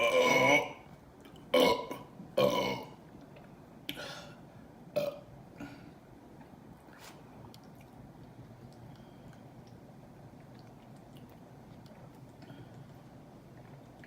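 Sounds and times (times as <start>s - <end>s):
woman burping: 0.0s - 0.8s, 1.5s - 3.0s, 5.0s - 5.7s.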